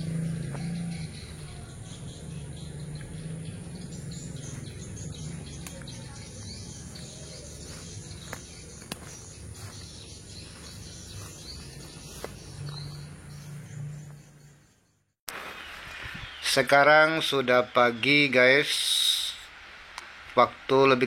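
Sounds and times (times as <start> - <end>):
insects chirring: 0.0 - 15.0
sharp clicks: 5.5 - 6.0.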